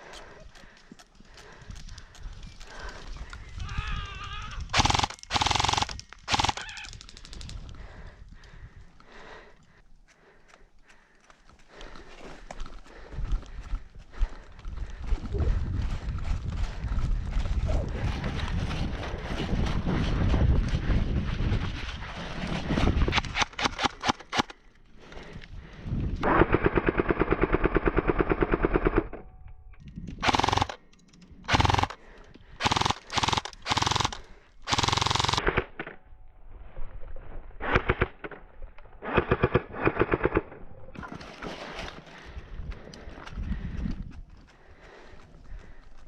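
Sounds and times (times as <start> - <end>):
airsoft guns firing bursts: 4.7 - 6.8, 23.1 - 24.5, 30.2 - 30.8, 31.5 - 32.0, 32.6 - 35.7.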